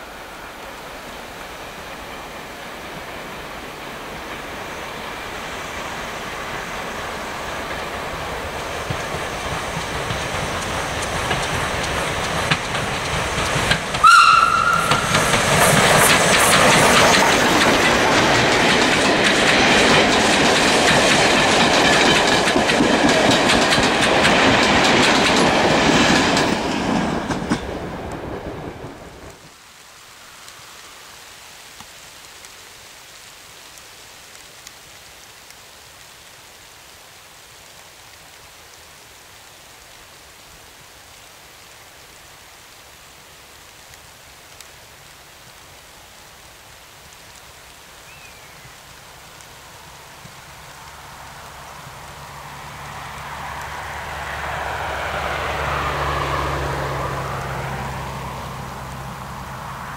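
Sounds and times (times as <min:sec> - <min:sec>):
faint steady hiss: 0:00.0 - 0:21.5, 0:27.7 - 0:59.9
steam locomotive running past: 0:00.0 - 0:29.5, 0:46.6 - 0:59.9
steam whistle blast: 0:14.0 - 0:15.2.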